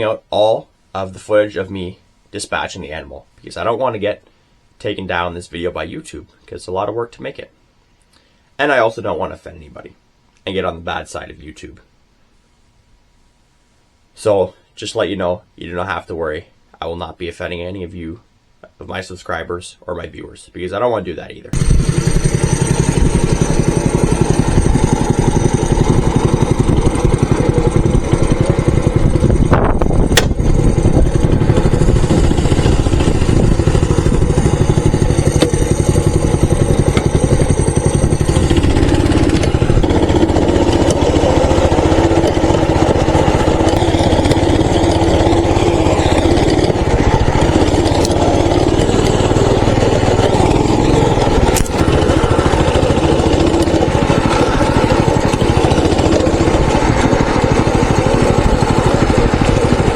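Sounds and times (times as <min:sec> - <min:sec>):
mini bike engine running: 0:21.6 - 0:59.9.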